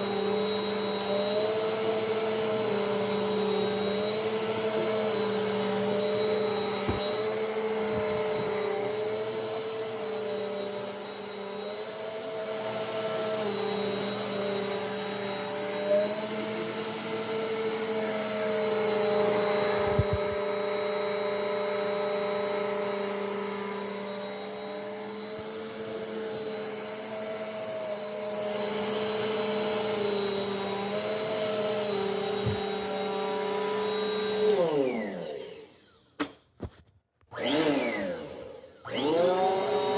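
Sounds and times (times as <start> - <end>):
vacuum cleaner running: 0.0 - 39.9.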